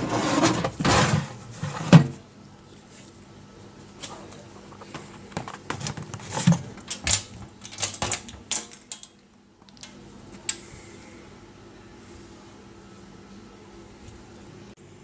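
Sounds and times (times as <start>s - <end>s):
small metal parts clicking: 5.9s - 10.6s.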